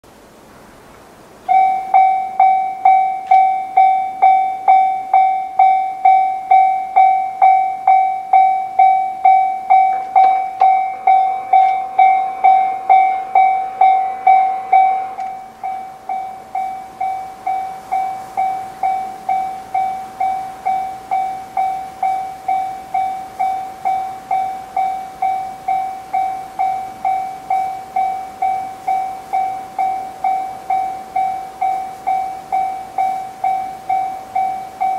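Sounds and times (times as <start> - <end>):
level crossing alarm dinging: 1.4 - 34.9.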